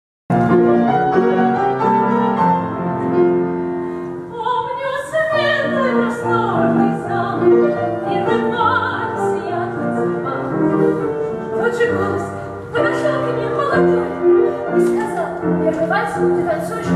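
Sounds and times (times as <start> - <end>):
piano playing: 0.3 - 16.9
woman singing operatically: 4.3 - 7.5, 8.1 - 10.6, 11.6 - 14.1.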